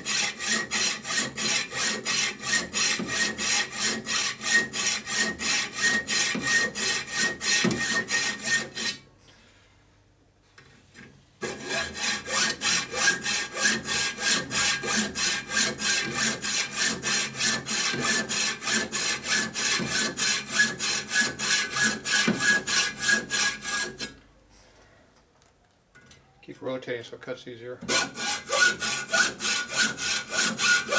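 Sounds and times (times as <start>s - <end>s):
hacksaw sawing metal: 0.0s - 9.0s, 11.4s - 24.2s, 27.9s - 30.9s.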